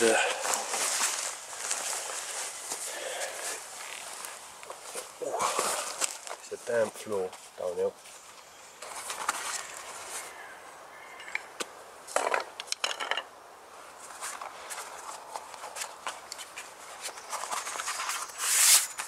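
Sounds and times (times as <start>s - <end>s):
short rustle: 0.1s - 10.4s.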